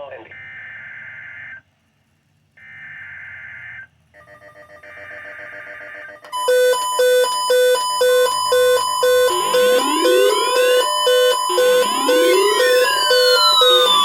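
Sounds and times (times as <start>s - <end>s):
electronic alert beeping: 6.4s - 14.0s
harsh digital tone bursts: 6.4s - 14.0s.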